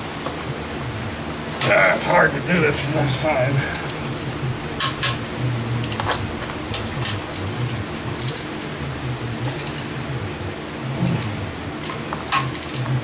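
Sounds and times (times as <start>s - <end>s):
hand tools clicking on metal: 9.5s - 9.9s, 10.8s - 13.0s.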